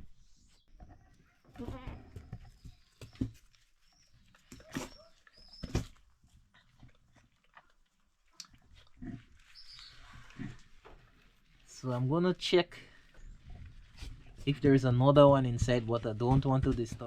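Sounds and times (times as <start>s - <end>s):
rustling: 1.0s - 17.0s
goat snuffles and calls: 13.0s - 14.8s.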